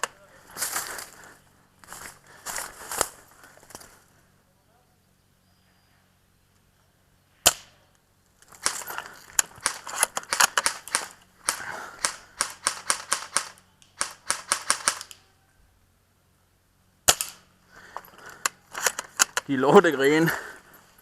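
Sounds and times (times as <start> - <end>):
twigs and brush snapping: 0.0 - 4.0, 7.5 - 14.3, 17.1 - 20.6.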